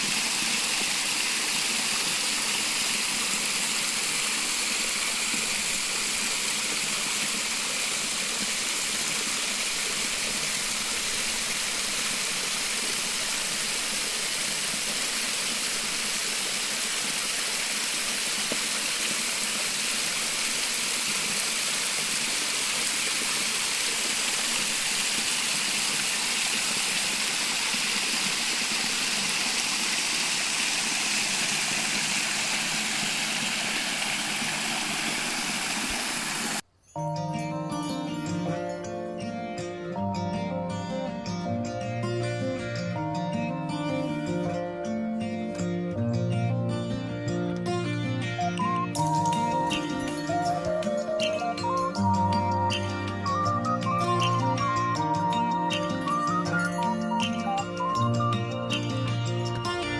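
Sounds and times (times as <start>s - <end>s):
waterfall rushing: 0.0s - 36.6s.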